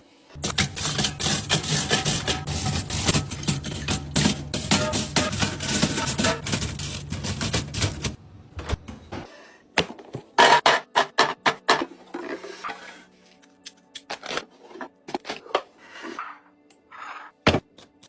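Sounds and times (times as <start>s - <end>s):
rattling clatter of small items: 0.4s - 8.2s.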